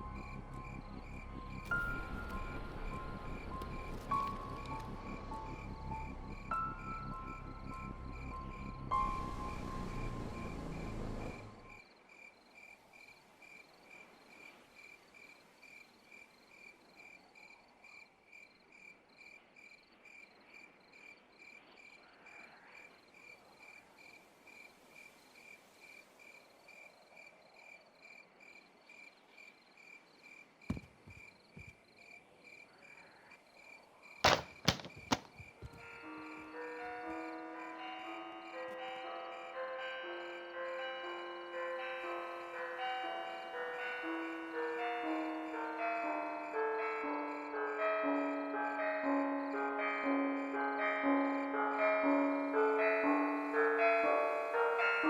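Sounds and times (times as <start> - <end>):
music: 0.0 - 11.8, 35.5 - 55.0
crickets chirping: 0.0 - 55.0
sharp knocks: 34.3 - 35.8.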